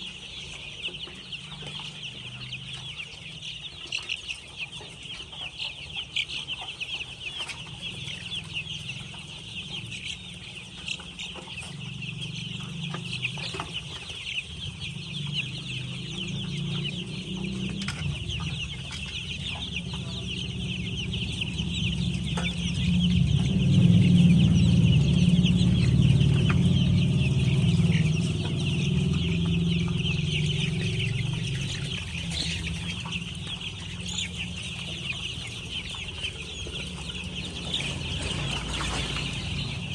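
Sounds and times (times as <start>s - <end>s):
hens clucking: 0.0s - 39.9s
low rumble: 11.6s - 39.9s.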